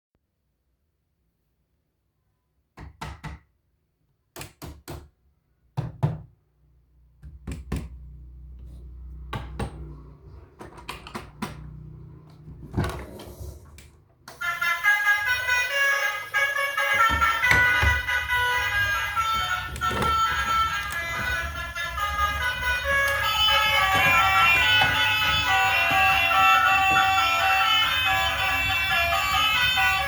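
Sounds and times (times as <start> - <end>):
music with steady tones: 14.4 - 30.0.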